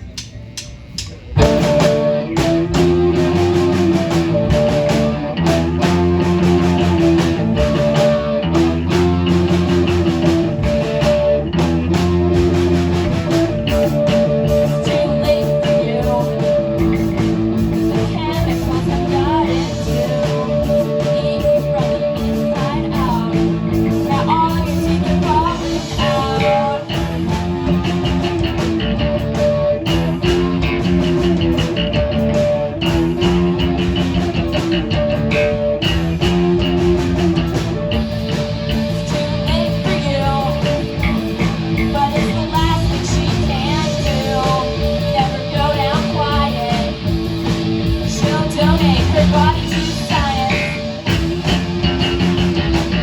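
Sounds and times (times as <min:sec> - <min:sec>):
rock band playing: 0:00.0 - 0:53.0
electric guitar: 0:01.1 - 0:53.0
person singing: 0:13.6 - 0:17.2, 0:17.8 - 0:28.5, 0:38.8 - 0:47.1, 0:48.0 - 0:51.1.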